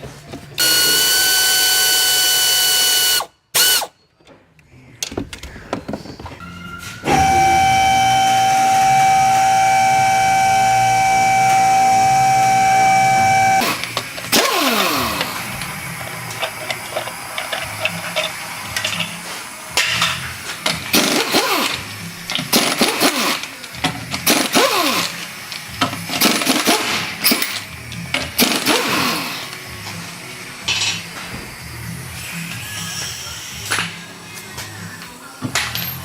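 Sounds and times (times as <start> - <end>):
power wrench whining: 0.6 - 3.9, 7.1 - 19.2, 19.9 - 29.8.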